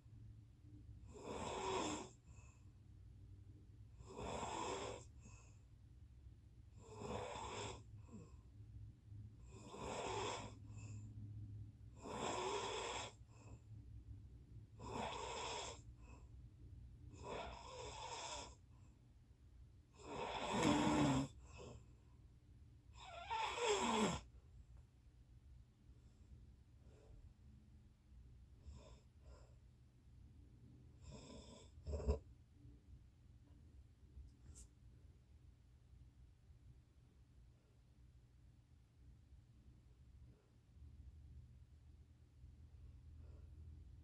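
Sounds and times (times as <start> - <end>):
loud snoring: 1.1 - 2.2, 4.0 - 5.1, 6.8 - 8.2, 9.5 - 10.8, 12.0 - 13.2, 14.8 - 15.9, 17.2 - 18.6, 20.0 - 21.7, 23.0 - 24.3, 31.0 - 32.2.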